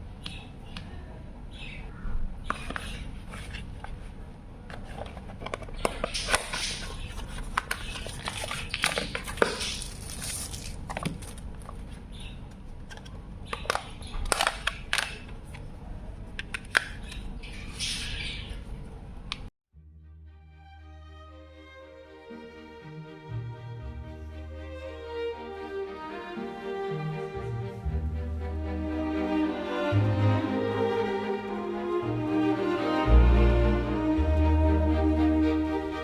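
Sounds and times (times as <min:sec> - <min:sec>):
low steady hum: 0:27.2 - 0:36.0.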